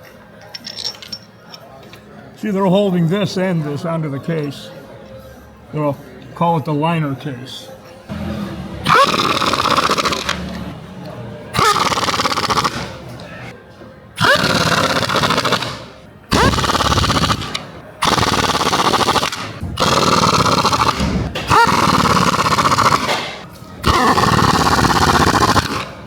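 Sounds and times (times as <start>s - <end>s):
air impact wrench hammering: 8.1s - 10.8s, 11.5s - 13.5s, 14.2s - 26.0s.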